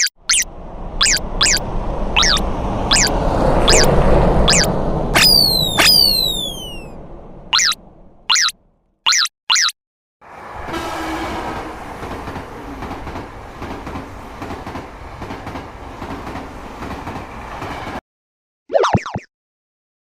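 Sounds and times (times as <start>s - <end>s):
cartoon falling-pitch sound effect: 0.0s - 0.4s, 1.0s - 1.6s, 2.2s - 3.9s, 4.5s - 6.9s, 7.6s - 8.5s, 9.1s - 9.7s, 18.7s - 19.3s
train rumbling on rails: 0.2s - 8.8s, 10.2s - 18.0s.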